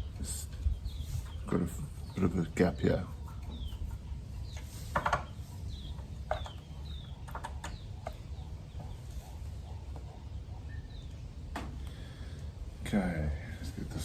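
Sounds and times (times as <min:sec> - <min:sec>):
bird chirps: 0:00.0 - 0:14.0
steady low hum: 0:00.0 - 0:14.0.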